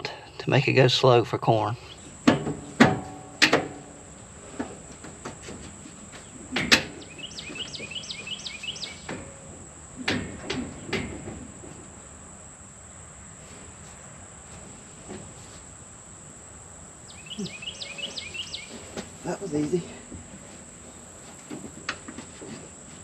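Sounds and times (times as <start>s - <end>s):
bird chirping: 1.7s - 2.8s, 6.1s - 9.6s, 17.0s - 20.1s
high insect whine: 1.7s - 23.0s
metal knocks: 2.2s - 8.0s, 8.8s - 11.9s.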